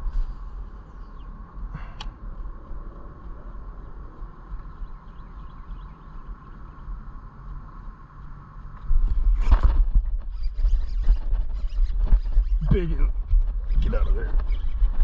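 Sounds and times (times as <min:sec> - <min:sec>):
faint steady hum: 0:00.0 - 0:15.0
clicks and rustles in grass: 0:08.7 - 0:15.0.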